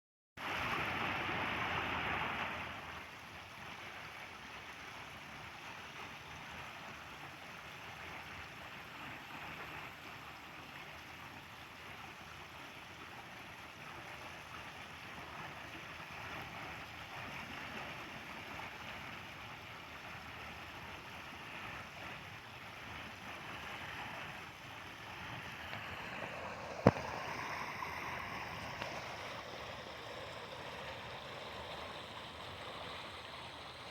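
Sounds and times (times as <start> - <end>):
steady rushing outdoor noise: 24.8 - 33.9.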